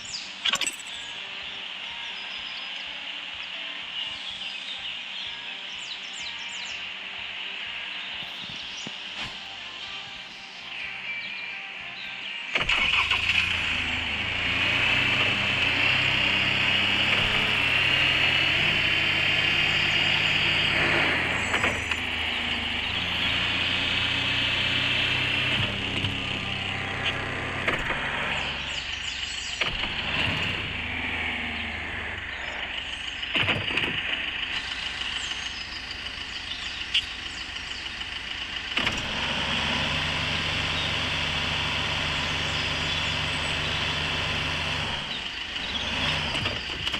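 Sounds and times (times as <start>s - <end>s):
vehicle engine driving off-road: 0.0s - 46.9s.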